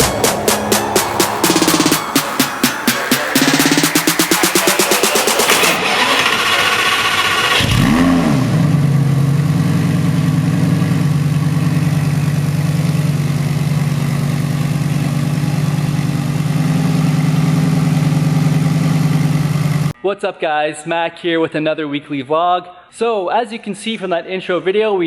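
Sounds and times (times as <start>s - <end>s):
car engine starting and idling: 0.0s - 20.0s.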